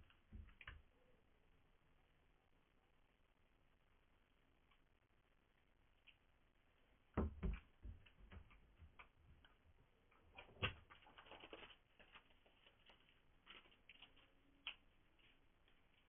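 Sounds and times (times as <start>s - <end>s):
quiet clicks and light knocks: 0.0s - 0.9s, 7.1s - 16.0s
small ticks: 4.5s - 6.5s, 8.1s - 16.0s.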